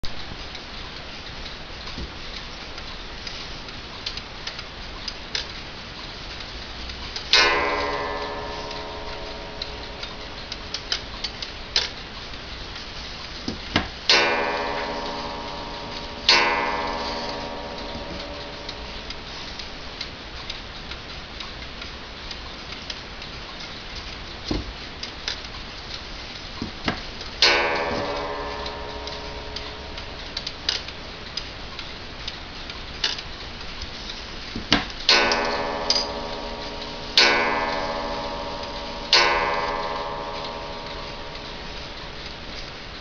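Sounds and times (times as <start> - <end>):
wall clock ticking: 0.0 - 43.0
clock chime striking: 7.3 - 11.8, 14.1 - 19.9, 27.4 - 31.2, 35.1 - 43.0.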